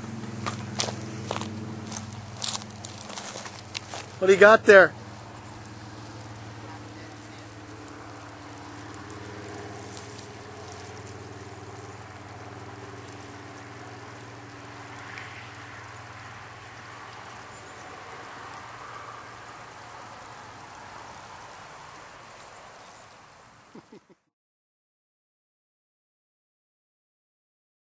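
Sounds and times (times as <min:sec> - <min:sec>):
boat motor running: 0:00.0 - 0:21.6
water rushing: 0:00.0 - 0:24.0.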